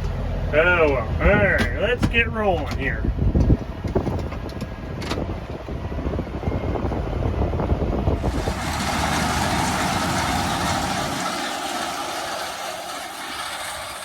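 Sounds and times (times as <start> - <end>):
tractor engine running: 0.0 - 14.0
steady rushing noise: 8.1 - 14.0.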